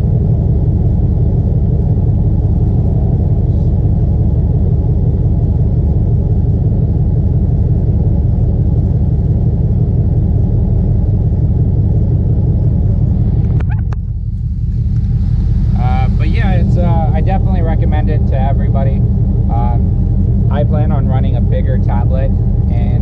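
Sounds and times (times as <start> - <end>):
car engine rumbling: 0.0 - 23.0.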